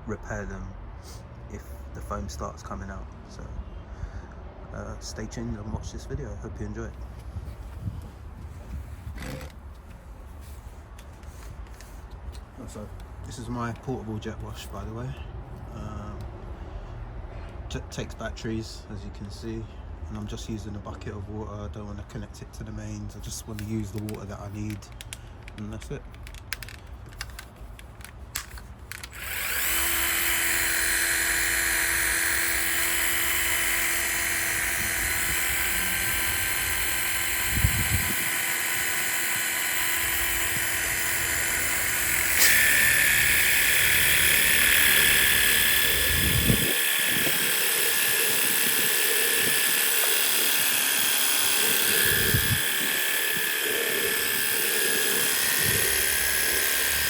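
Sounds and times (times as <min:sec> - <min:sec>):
pressure washer pump whirring: 0:08.7 - 0:09.8, 0:26.2 - 0:57.0.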